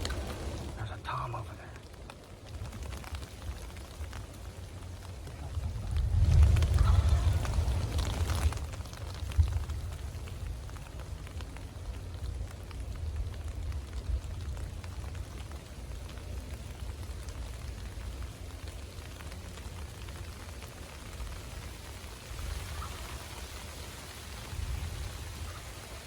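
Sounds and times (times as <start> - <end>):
steady rain falling: 0.0 - 26.0
low rumble: 5.0 - 10.8.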